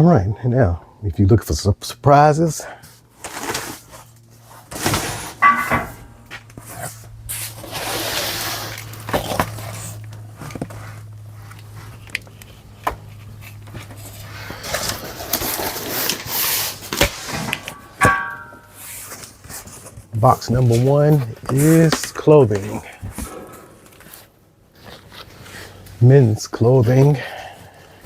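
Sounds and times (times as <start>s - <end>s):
steady low hum: 2.4s - 16.1s, 17.1s - 19.3s.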